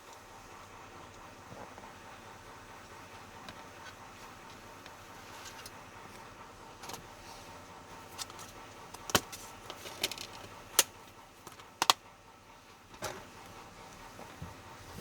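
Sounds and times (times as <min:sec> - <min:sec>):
sharp clicks and light taps: 0:08.2 - 0:12.1.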